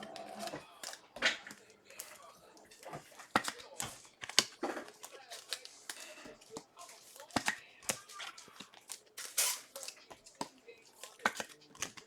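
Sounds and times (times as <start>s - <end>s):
trading cards clicking and rustling: 0.0s - 12.0s
cards swishing scrape: 8.3s - 12.0s.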